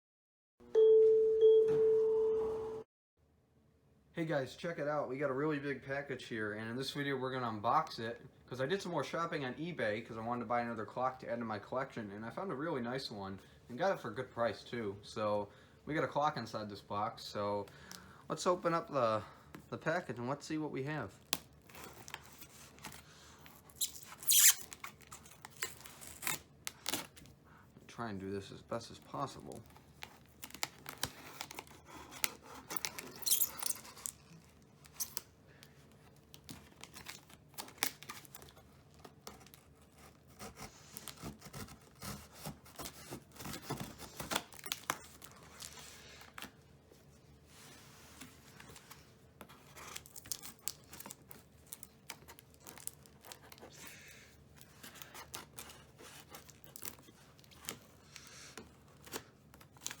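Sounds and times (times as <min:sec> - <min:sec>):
packing tape tearing off cardboard: 0:21.2 - 0:27.3, 0:29.8 - 0:35.3, 0:36.3 - 0:46.6, 0:49.6 - 0:53.8.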